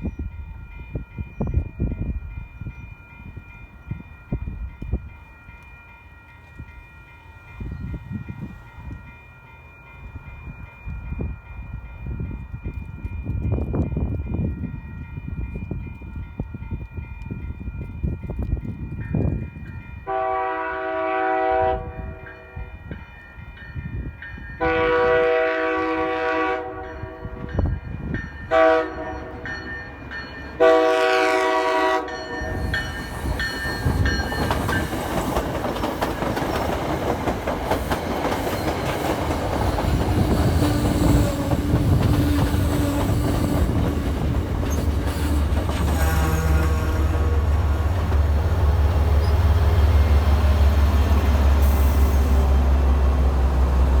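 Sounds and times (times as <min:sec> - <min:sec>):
train passing with rumble: 0:00.0 - 0:54.0
train horn: 0:20.0 - 0:22.8, 0:24.6 - 0:27.6, 0:28.5 - 0:29.6, 0:30.6 - 0:33.0, 0:44.7 - 0:54.0
wheels clicking over rail joints: 0:32.6 - 0:48.4.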